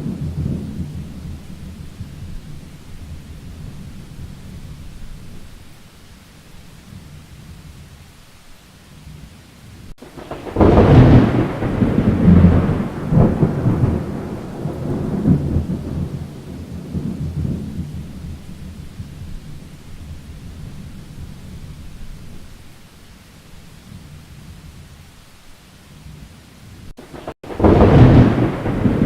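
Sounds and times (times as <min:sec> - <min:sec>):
thunderclap with rolling rumble: 0:00.0 - 0:05.6, 0:10.0 - 0:22.6, 0:27.0 - 0:29.0
rain hissing: 0:00.0 - 0:29.0.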